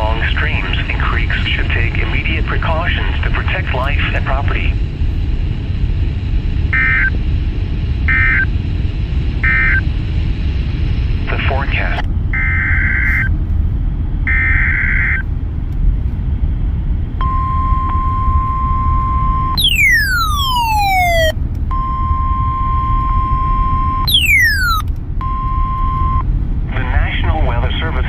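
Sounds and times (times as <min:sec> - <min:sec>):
steady single tone: 0:17.2 - 0:26.2
digital data noise bursts: 0:19.6 - 0:21.3, 0:24.1 - 0:24.8
whistling sweep falling in pitch: 0:19.6 - 0:21.3, 0:24.1 - 0:24.8.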